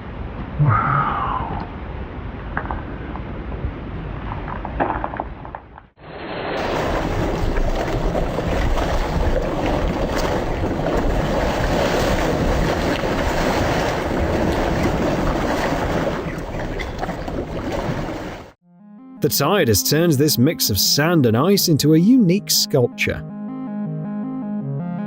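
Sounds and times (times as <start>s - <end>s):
wind rushing: 0.6s - 2.2s
surf: 6.1s - 18.6s.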